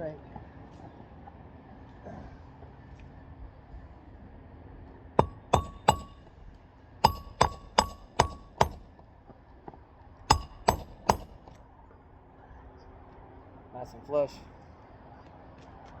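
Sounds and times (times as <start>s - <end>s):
hammer striking nail: 5.2s - 6.3s, 7.0s - 8.9s, 10.3s - 11.6s.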